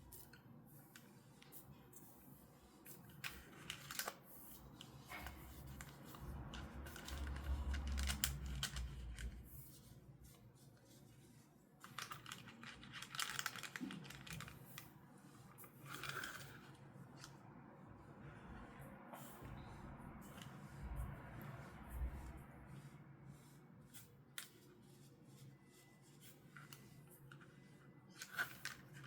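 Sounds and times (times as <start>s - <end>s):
plastic and cardboard crinkling: 11.8s - 14.9s.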